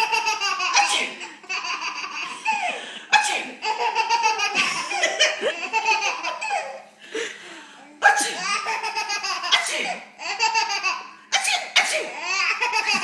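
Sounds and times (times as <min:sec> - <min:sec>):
baby laughing: 0:00.0 - 0:02.8, 0:03.6 - 0:06.9, 0:08.0 - 0:11.2, 0:12.1 - 0:13.0
adult fake sneezing: 0:00.7 - 0:01.3, 0:02.6 - 0:03.6, 0:08.0 - 0:08.6, 0:09.5 - 0:10.1, 0:11.3 - 0:12.2.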